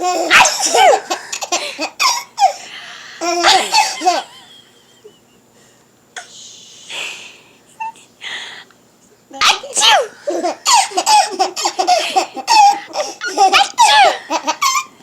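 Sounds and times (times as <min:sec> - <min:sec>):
baby laughing: 0:00.0 - 0:02.6, 0:03.2 - 0:04.4, 0:09.4 - 0:15.0.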